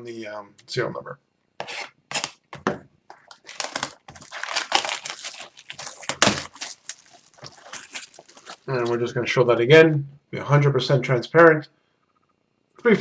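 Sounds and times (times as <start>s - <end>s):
short scrapes: 1.6s - 2.4s
wrapping crinkling and tearing: 1.6s - 9.0s.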